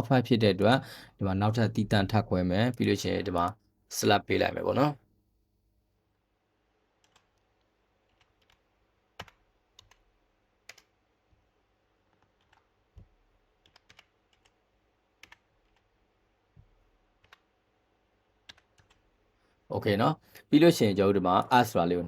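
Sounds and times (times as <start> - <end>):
keyboard and mouse clicks: 7.0 - 11.0, 12.1 - 14.6, 15.2 - 16.0, 16.6 - 17.6, 18.4 - 19.1.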